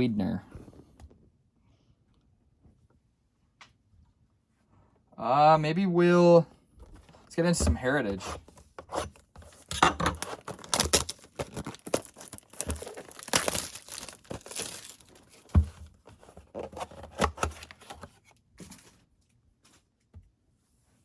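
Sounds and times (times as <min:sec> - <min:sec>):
wrappers tearing and crinkling: 0:10.1 - 0:15.5.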